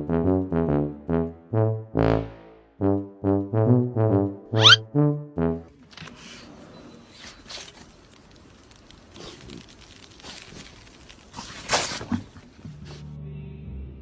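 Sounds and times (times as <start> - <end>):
brass music phrase: 0.0 - 5.8.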